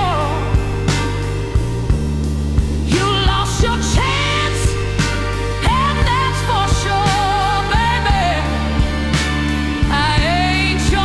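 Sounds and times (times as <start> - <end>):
held bass notes: 0.0 - 11.0
steady drum beat: 0.0 - 11.0
wavering lead melody: 0.0 - 11.0.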